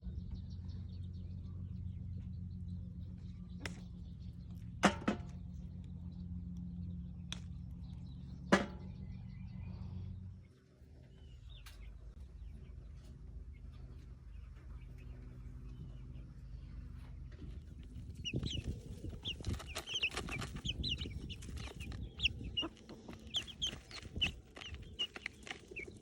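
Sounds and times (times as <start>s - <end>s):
steady low hum: 0.0s - 26.0s
chicks peeping: 13.6s - 26.0s.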